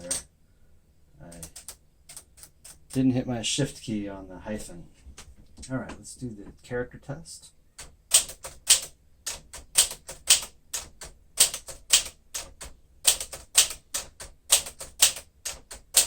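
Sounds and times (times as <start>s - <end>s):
manual typewriter typing: 0.0s - 0.2s, 1.2s - 3.1s, 7.8s - 16.0s.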